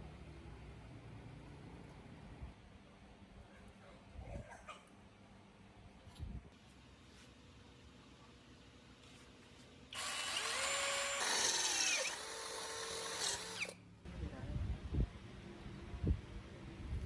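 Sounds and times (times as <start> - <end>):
power tool whining: 9.9 - 13.8.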